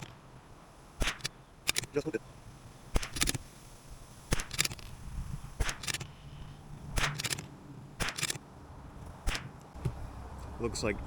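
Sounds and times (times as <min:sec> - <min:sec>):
rifle shots: 0:01.0 - 0:02.0, 0:02.9 - 0:03.4, 0:04.3 - 0:04.8, 0:05.6 - 0:06.1, 0:06.9 - 0:08.4, 0:09.2 - 0:09.6
echo of gunshot: 0:07.0 - 0:07.4.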